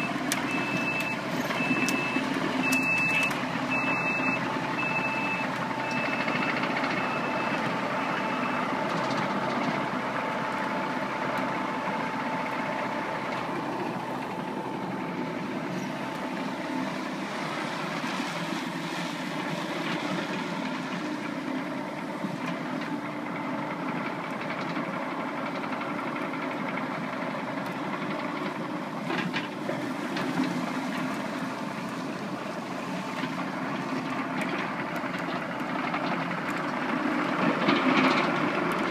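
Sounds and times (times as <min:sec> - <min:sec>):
excavator diesel engine running: 0:00.0 - 0:38.9
travel alarm beeping: 0:00.5 - 0:07.5.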